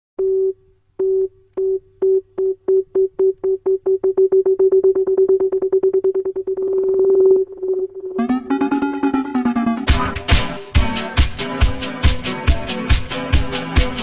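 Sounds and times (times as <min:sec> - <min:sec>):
electronic beeps speeding up: 0:03.5 - 0:10.2.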